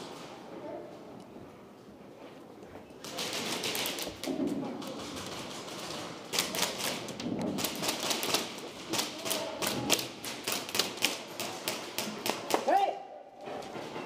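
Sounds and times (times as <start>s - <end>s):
airsoft guns firing: 3.0s - 12.8s.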